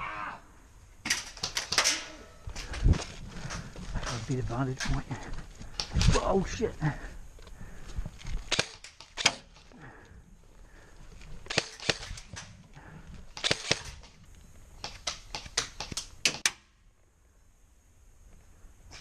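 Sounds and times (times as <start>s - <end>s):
airsoft gun shots: 8.5s - 9.6s, 13.4s - 14.0s.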